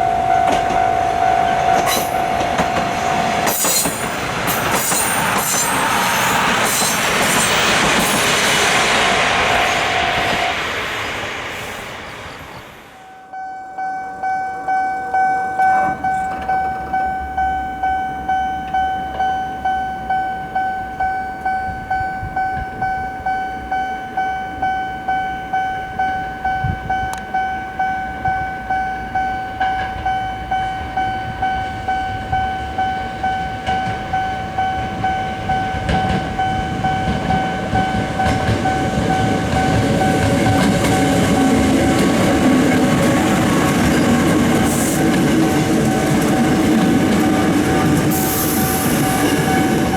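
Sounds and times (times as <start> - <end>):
level-crossing warning bell ringing: 0.0 - 8.4, 13.0 - 49.9
train rumbling: 0.0 - 49.9.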